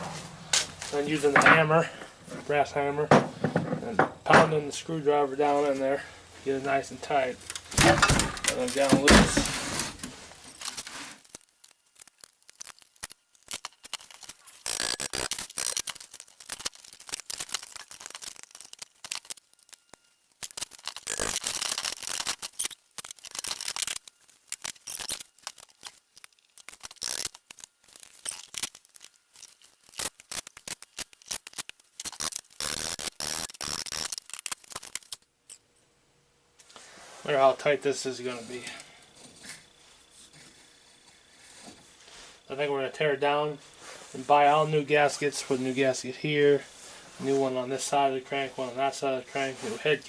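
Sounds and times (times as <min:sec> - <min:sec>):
screwdriver clicking and scraping: 0:10.4 - 0:35.6.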